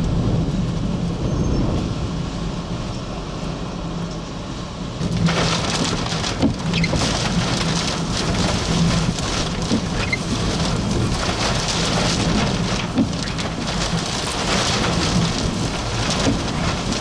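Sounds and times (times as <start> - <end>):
low rumble: 0.0 - 4.1
strong wind rushing: 0.0 - 5.2.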